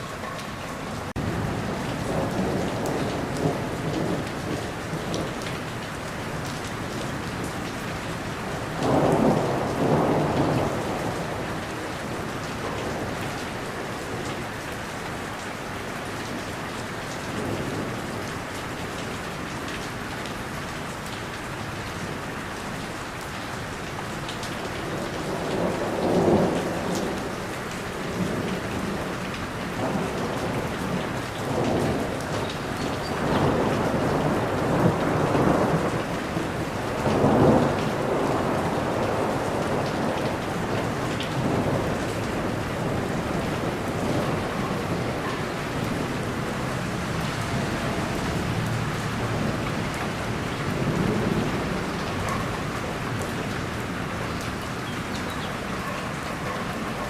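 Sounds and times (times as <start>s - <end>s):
heavy rain falling: 0.0s - 57.0s
thunder rumbling: 1.0s - 5.5s, 8.6s - 13.2s, 28.1s - 56.2s.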